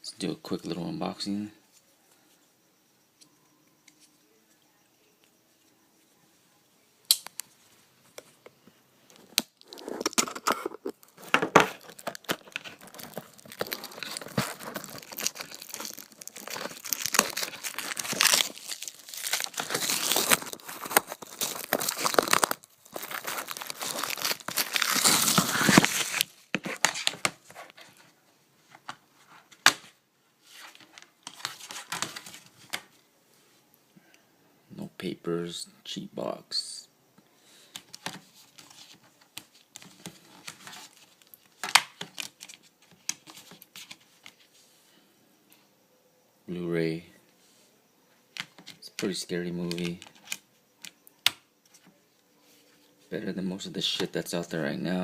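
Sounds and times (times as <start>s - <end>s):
plastic shrink-wrap crinkling: 9.4s - 27.6s.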